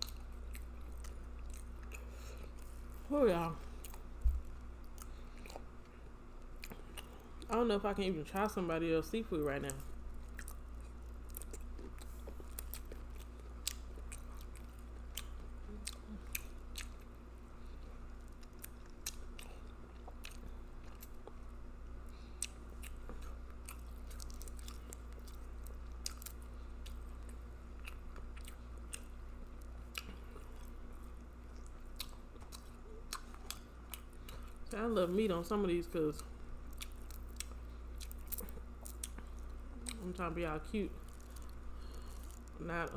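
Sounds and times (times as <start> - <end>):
person chewing and smacking: 0.0 - 7.6, 9.6 - 34.7, 36.2 - 40.3, 41.0 - 42.6.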